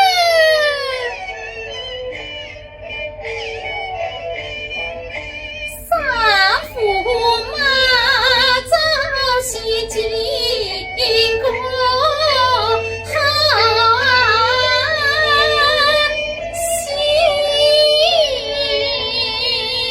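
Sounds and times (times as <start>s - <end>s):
high voice singing opera: 0.0s - 1.3s, 5.7s - 19.9s.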